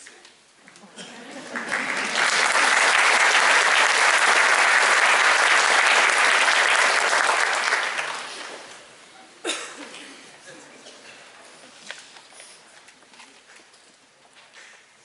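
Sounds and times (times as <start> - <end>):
audience applauding: 1.2 - 8.8.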